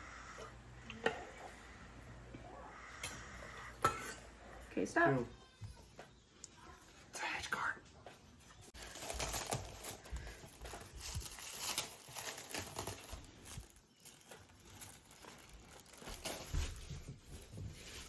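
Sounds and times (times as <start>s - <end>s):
packing being crumpled and torn: 8.8s - 18.0s.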